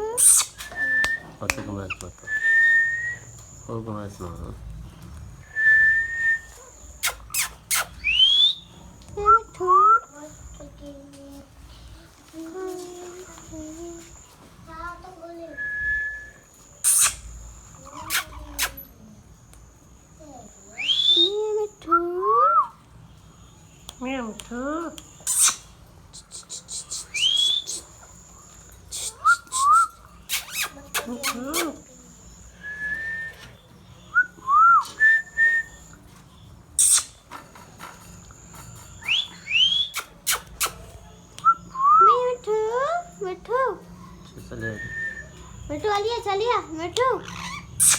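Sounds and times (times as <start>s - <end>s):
parakeet screeching and calling: 0.0s - 1.1s, 7.0s - 8.7s, 16.8s - 18.9s, 25.2s - 31.9s, 36.8s - 37.4s, 39.0s - 41.0s, 45.7s - 47.9s
parrot squawk: 0.2s - 0.8s, 7.0s - 8.2s, 16.8s - 18.8s, 25.2s - 28.1s, 28.9s - 31.8s, 36.8s - 37.2s, 47.2s - 47.9s
parrot whistling: 0.2s - 1.3s, 1.9s - 3.3s, 5.5s - 8.7s, 15.6s - 18.8s, 20.8s - 21.4s, 25.2s - 28.1s, 28.9s - 31.8s, 32.6s - 33.5s, 34.1s - 35.9s, 36.8s - 37.2s, 39.0s - 40.8s, 44.6s - 45.4s, 47.2s - 47.9s.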